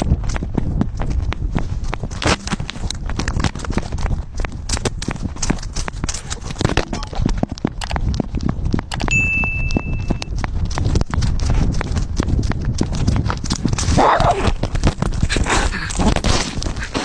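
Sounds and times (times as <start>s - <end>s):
steady high tone: 8.9s - 10.3s.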